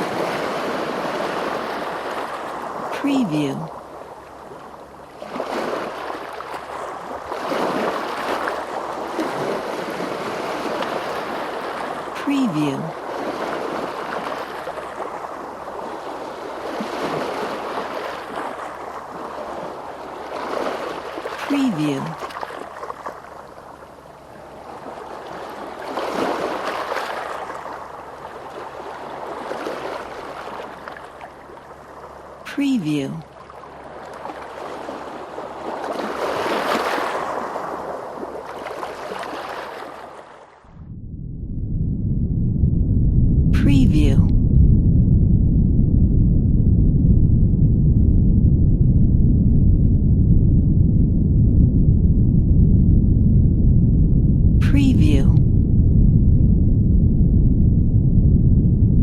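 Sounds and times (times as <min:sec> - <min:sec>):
sea waves washing onto shore: 0:00.0 - 0:12.2, 0:12.9 - 0:32.5, 0:33.3 - 0:40.6.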